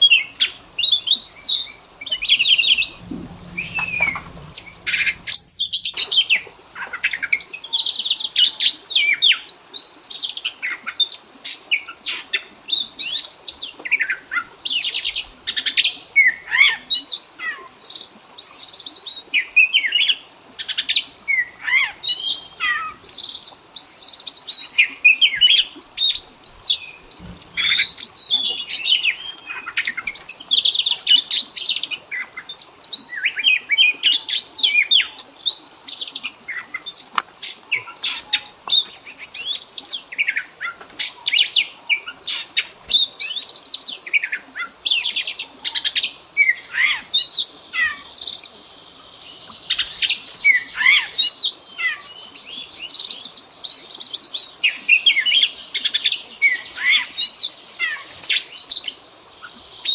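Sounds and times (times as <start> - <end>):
songbird singing whistles and chirps: 21.4 - 59.9.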